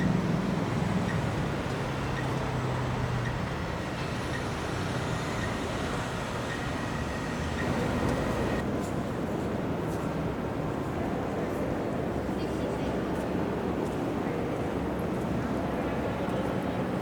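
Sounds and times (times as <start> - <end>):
low engine hum: 0.0 - 8.7
construction site and traffic rumble: 0.0 - 17.0.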